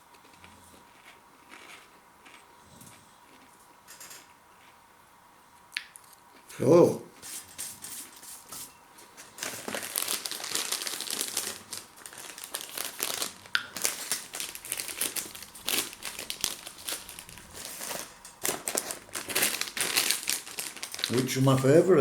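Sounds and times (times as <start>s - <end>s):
crisp packet crinkling: 9.3s - 21.7s.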